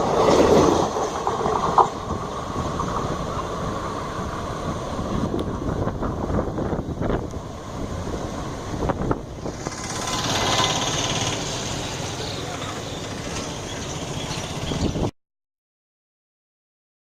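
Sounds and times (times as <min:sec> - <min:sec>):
train rumbling and rattling past: 0:00.0 - 0:15.1
wind buffeting microphone: 0:00.0 - 0:15.1.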